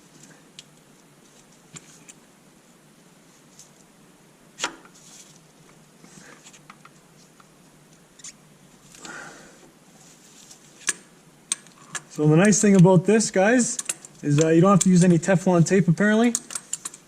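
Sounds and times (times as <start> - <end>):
short rustle: 5.0 - 7.4, 9.9 - 10.8
light clicks of tools and parts: 13.7 - 15.2, 16.2 - 17.0.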